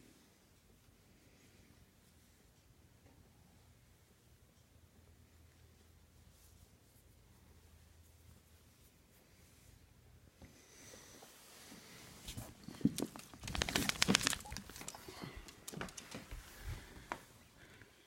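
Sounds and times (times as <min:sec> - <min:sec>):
handling noise rustling: 0:11.5 - 0:17.2.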